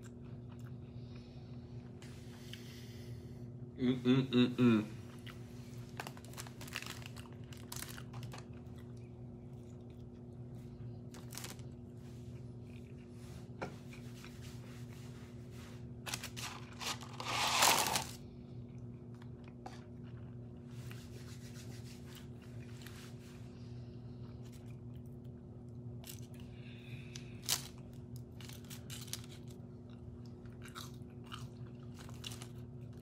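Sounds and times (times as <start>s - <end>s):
low electrical hum: 0.0s - 33.0s
paper packaging rustling: 5.9s - 8.5s, 11.2s - 11.7s, 16.1s - 18.2s.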